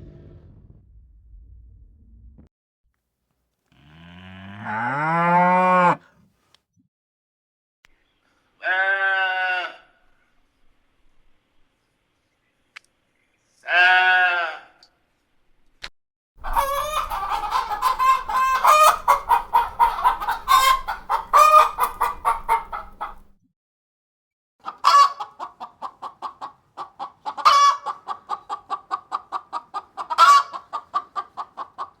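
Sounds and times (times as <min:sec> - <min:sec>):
chicken squawk: 0:16.4 - 0:23.3, 0:24.6 - 0:32.0
chickens clucking: 0:16.4 - 0:23.3, 0:24.6 - 0:32.0.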